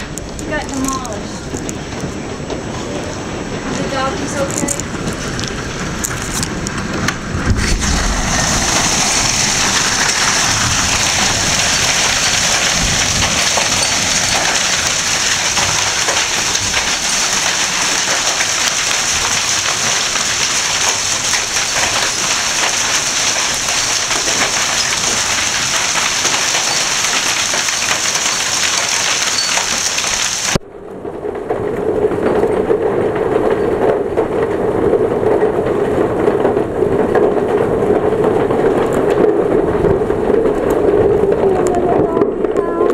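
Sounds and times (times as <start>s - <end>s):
hail and heavy rain pelting: 0.0s - 42.9s
dull low rushing sound: 6.9s - 13.4s.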